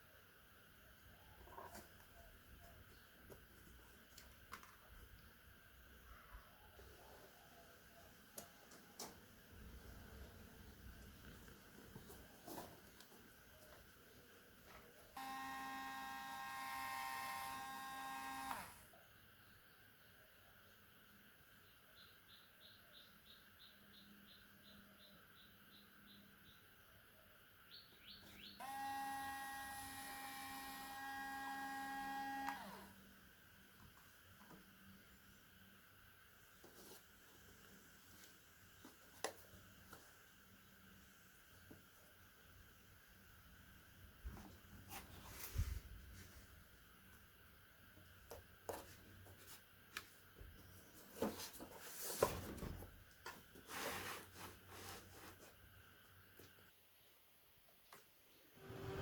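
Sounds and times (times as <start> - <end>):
faint steady hum: 0.0 - 59.0
small electric motor whining: 15.2 - 18.9, 28.6 - 33.0
motor switch click: 32.4 - 32.8
rubbing of handled objects: 53.3 - 55.7.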